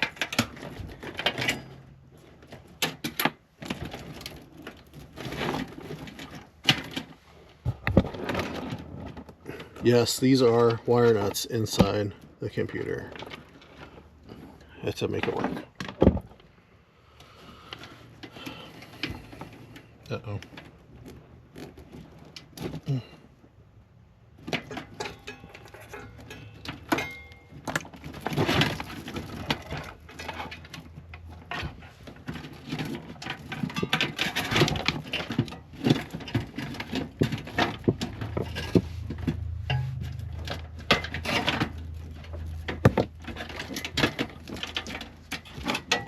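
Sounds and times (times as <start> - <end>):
low hum: 37.4 - 45.0.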